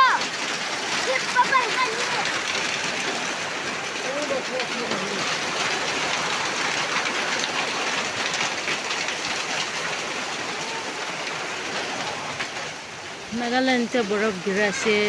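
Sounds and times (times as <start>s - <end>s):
hailstones pelting down: 0.0s - 15.0s.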